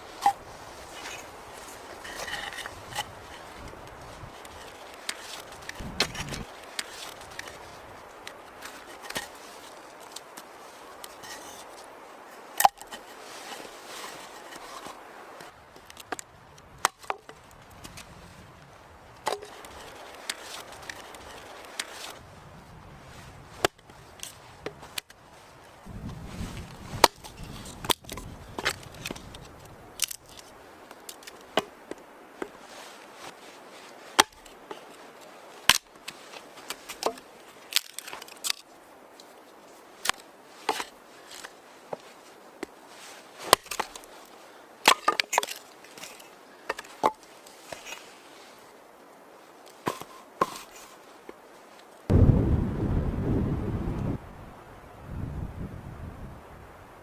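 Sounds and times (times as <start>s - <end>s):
wind on microphone: 0.4s - 4.8s, 5.5s - 6.5s, 17.4s - 19.2s, 22.2s - 24.8s, 25.8s - 30.0s, 52.1s - 57.0s
wood being chopped: 5.4s - 7.6s.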